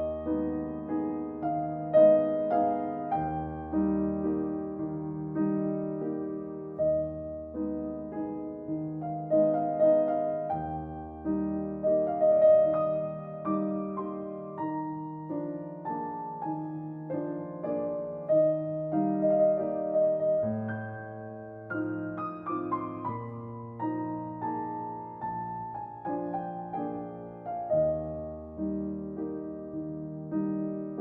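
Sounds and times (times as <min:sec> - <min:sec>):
gentle piano music: 0:00.0 - 0:31.0.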